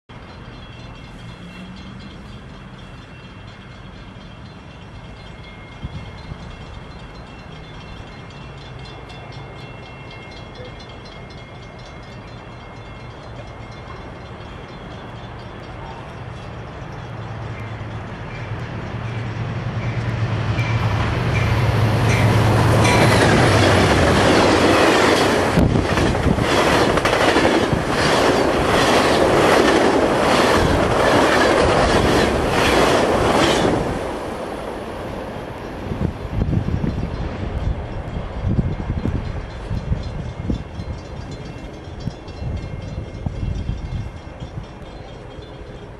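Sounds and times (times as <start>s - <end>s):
train passing: 0.1s - 45.9s
wheels clattering over rail joints: 21.2s - 34.9s.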